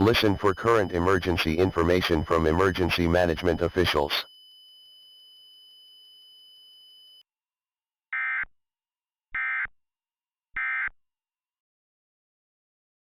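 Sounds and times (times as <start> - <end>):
digital data tone bursts: 0.0 - 4.3
faint steady high tone: 0.0 - 7.2.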